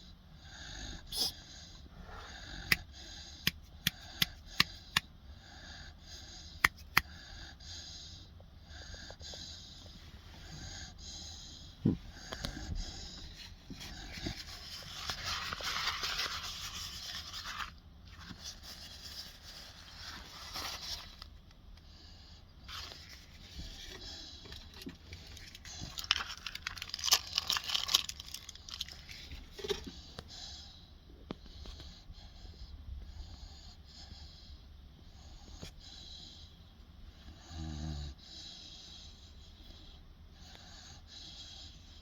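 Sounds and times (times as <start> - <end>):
puppy snoring: 0.4 - 14.9, 31.4 - 42.0.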